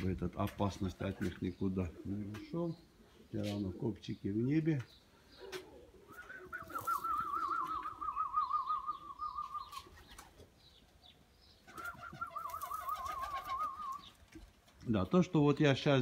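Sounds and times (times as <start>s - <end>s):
pigeon flock stirring: 4.8s - 14.9s
warbling whistle: 6.1s - 9.8s, 11.8s - 14.0s.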